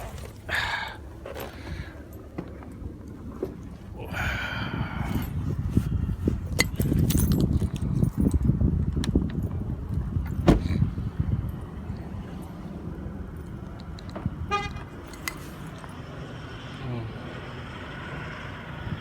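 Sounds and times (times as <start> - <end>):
low rumbling: 0.0 - 15.8.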